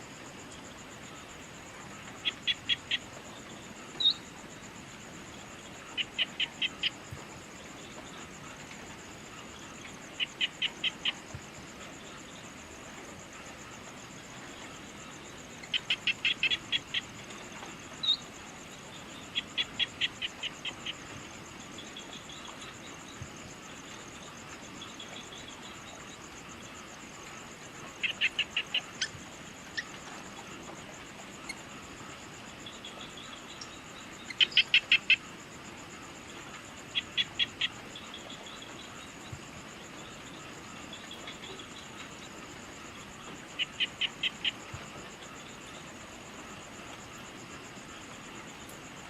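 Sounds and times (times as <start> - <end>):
faint outdoor hiss: 0.0 - 49.0
high-pitched insect trill: 0.0 - 49.0.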